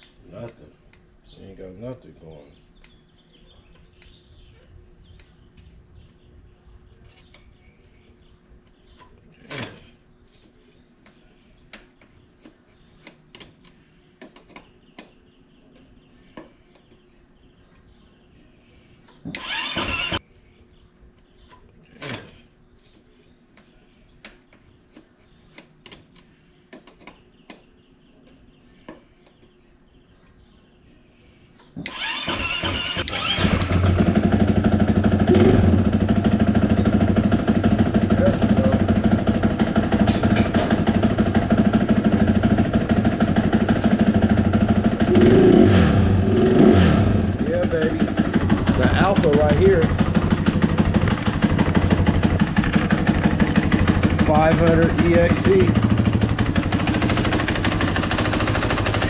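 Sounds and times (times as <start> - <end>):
motorcycle electric starter cranking: 19.3 - 20.2, 31.8 - 45.4, 47.6 - 59.0.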